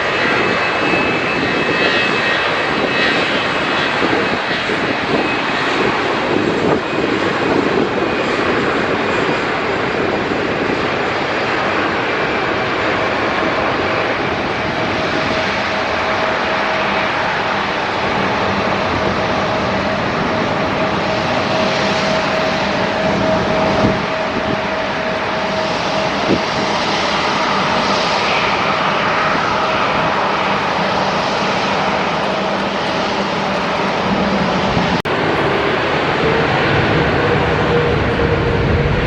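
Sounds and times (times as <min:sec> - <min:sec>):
jet engines running: 0:00.0 - 0:39.0.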